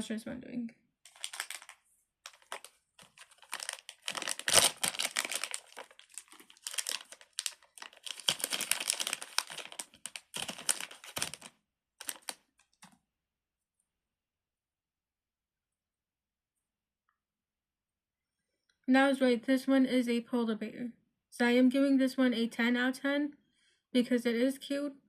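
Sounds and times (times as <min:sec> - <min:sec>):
plastic wrapper crinkling: 0:01.1 - 0:13.0.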